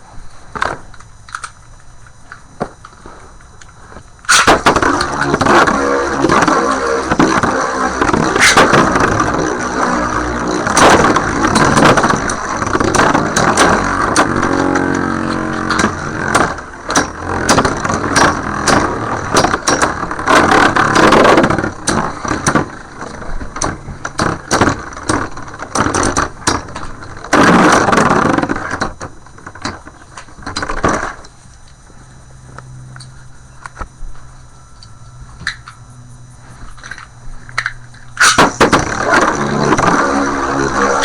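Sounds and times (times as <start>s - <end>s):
spinning tops clacking together: 4.3s - 22.0s
spinning tops whirring: 4.3s - 28.8s, 36.9s - 41.0s.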